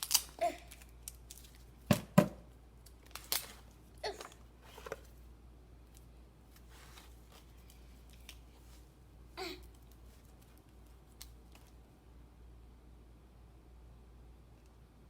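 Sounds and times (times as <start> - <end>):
scissors snipping plastic ties: 0.0 - 1.5.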